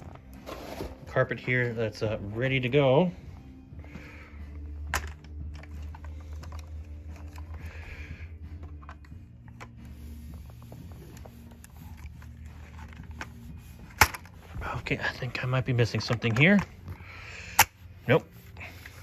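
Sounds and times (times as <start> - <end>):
plastic parts clicking: 4.8 - 7.7
handling rustles: 8.6 - 17.0.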